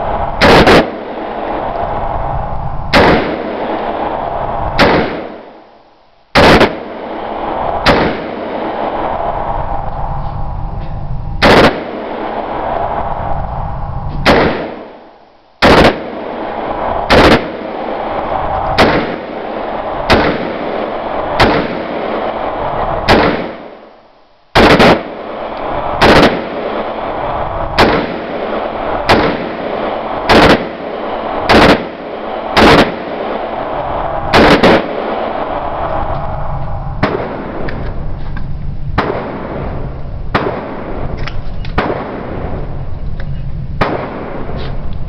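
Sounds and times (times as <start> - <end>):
rifle shots: 0.4 - 1.4, 2.9 - 5.6, 6.4 - 9.0, 11.4 - 12.7, 14.2 - 22.4, 23.0 - 23.9, 24.6 - 27.1, 27.7 - 33.6, 34.3 - 35.5, 37.0 - 38.1, 38.9 - 42.8, 43.8 - 44.9.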